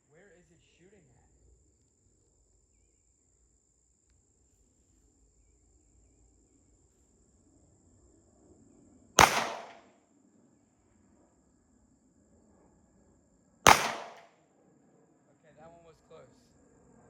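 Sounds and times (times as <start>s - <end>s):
gunshot: 9.2s - 9.8s, 13.7s - 14.3s.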